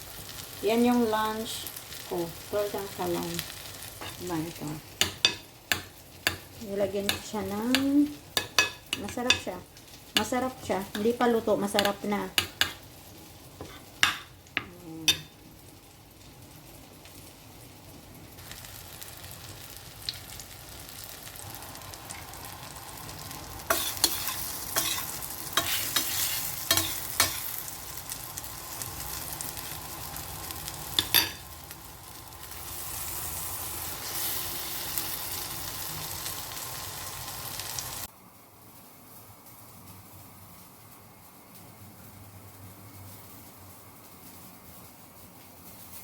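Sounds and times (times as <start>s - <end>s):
omelette sizzling in oil: 0.0s - 46.0s.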